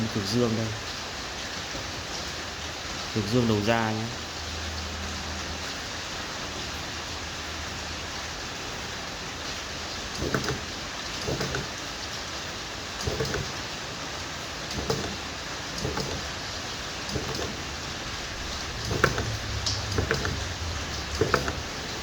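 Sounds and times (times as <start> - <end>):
steady hiss: 0.0 - 22.0
spot welder buzzing snaps: 10.1 - 11.9, 13.0 - 13.7, 14.7 - 22.0.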